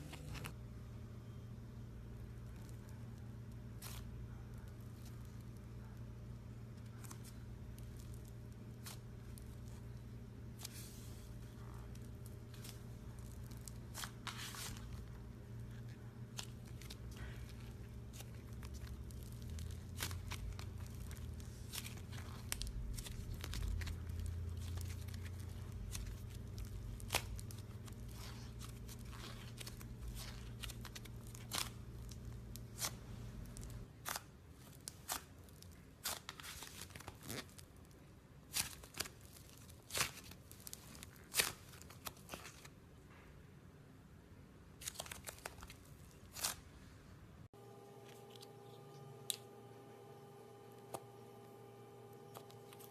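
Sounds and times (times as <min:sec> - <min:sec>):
slime crackling and popping: 0:06.8 - 0:11.0, 0:11.6 - 0:42.7.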